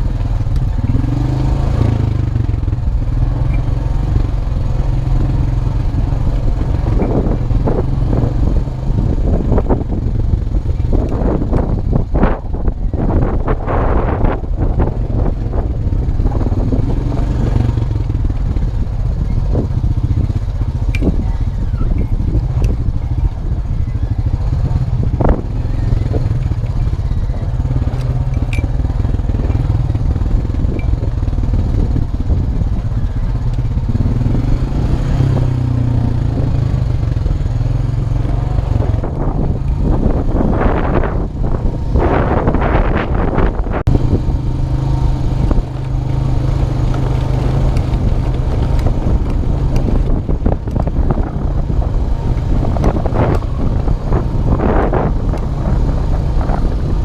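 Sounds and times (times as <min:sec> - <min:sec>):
atv engine running: 0:00.0 - 0:57.0
clatters and knocks on rough ground: 0:45.5 - 0:51.4.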